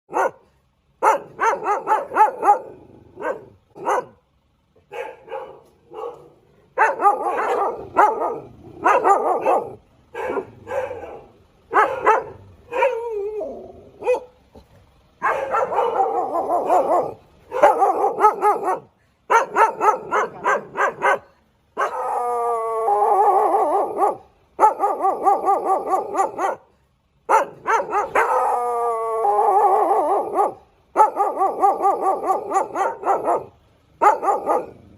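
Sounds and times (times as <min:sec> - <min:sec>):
dog barking: 0:00.1 - 0:04.2, 0:04.9 - 0:13.3, 0:14.0 - 0:14.4, 0:15.2 - 0:22.2, 0:23.1 - 0:26.7, 0:27.3 - 0:28.6, 0:29.4 - 0:34.9
dog howling: 0:11.8 - 0:14.2, 0:21.8 - 0:26.4, 0:27.8 - 0:33.5.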